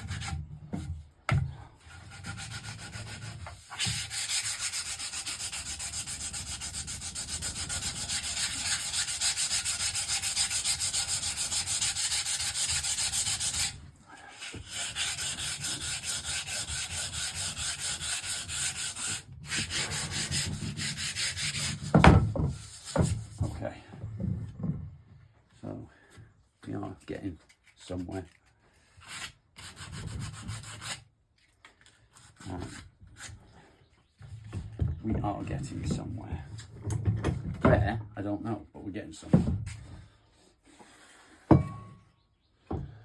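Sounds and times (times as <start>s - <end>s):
sandpaper rubbing on wood: 1.8s - 23.3s, 29.0s - 31.0s.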